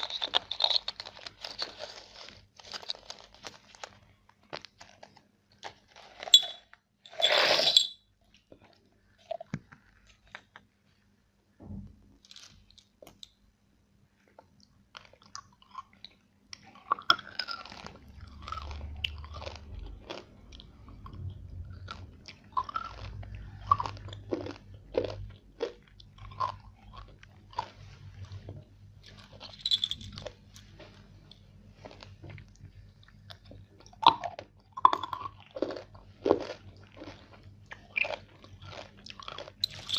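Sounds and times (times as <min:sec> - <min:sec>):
crunchy chewing: 0:00.0 - 0:10.7, 0:14.2 - 0:39.9
crunching bite of chocolate: 0:16.6 - 0:27.8, 0:33.2 - 0:39.9.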